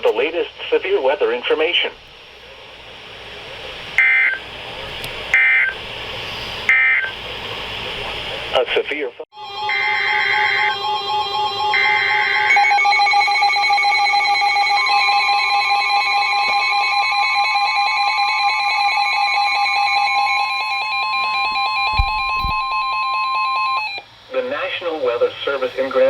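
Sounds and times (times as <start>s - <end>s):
short low thump: 21.9s - 22.7s.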